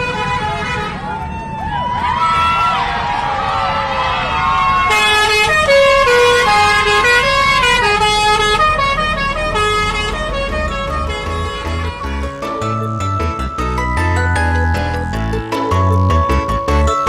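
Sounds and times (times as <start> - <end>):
multi-tone air horn tune: 4.9 - 16.1.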